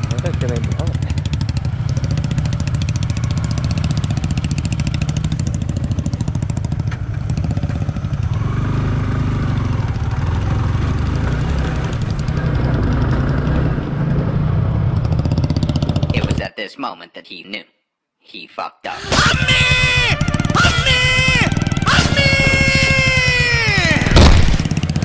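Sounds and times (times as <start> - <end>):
motorcycle engine low revs: 19.6 - 25.0.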